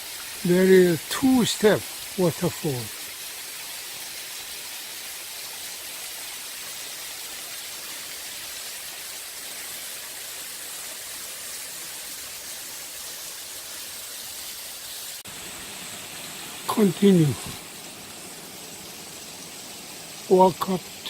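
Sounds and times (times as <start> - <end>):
waterfall rushing: 0.0 - 3.0, 15.2 - 21.0.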